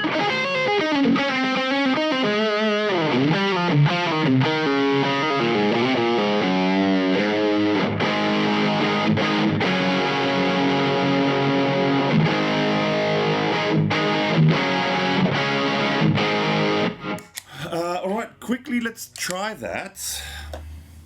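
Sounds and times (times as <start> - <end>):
distorted electric guitar lead: 0.0 - 17.3.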